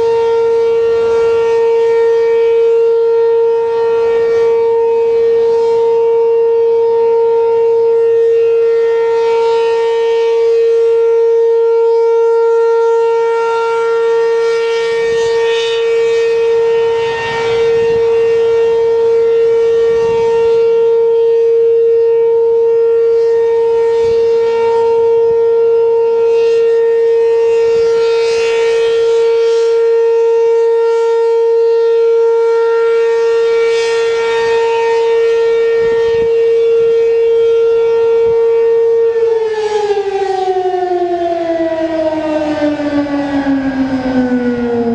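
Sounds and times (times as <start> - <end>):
outdoor warning siren steady tone: 0.0 - 44.9.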